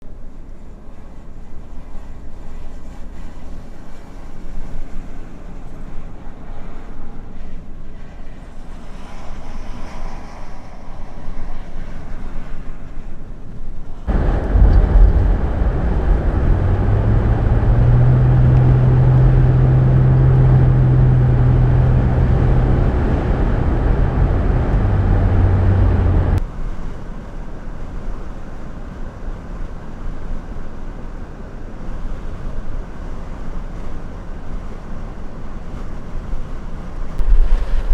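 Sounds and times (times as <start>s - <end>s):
vehicle driving on highway: 14.1s - 26.4s
wind noise on microphone: 14.1s - 26.4s, 37.1s - 37.9s.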